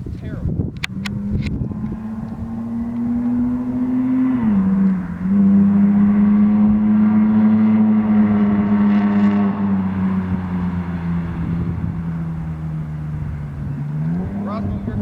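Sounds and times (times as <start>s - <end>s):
car engine drone: 0.0s - 15.0s.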